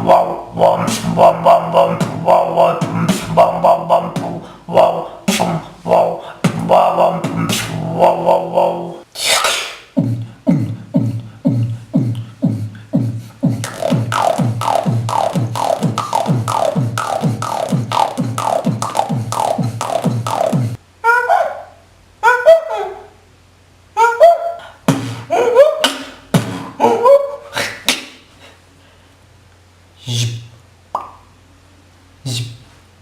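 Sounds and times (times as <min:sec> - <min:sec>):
beatboxing falling-pitch sounds: 0:00.0 - 0:20.8, 0:24.6 - 0:28.2, 0:31.0 - 0:31.3
beatboxing whoosh: 0:00.0 - 0:20.8, 0:24.9 - 0:26.8, 0:27.5 - 0:28.2.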